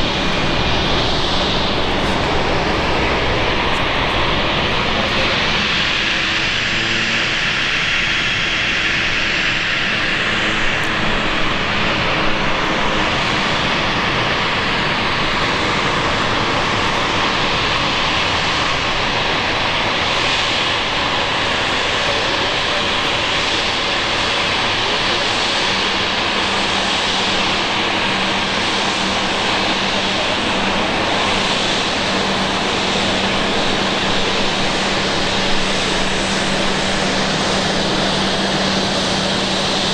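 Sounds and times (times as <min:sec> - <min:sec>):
jet engines running: 0:00.0 - 0:39.9.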